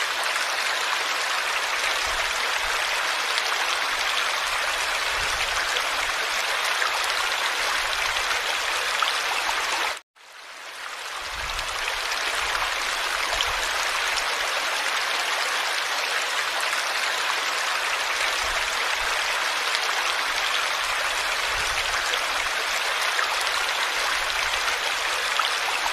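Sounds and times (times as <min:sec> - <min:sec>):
stream rushing: 0:00.0 - 0:10.0, 0:10.8 - 0:25.9.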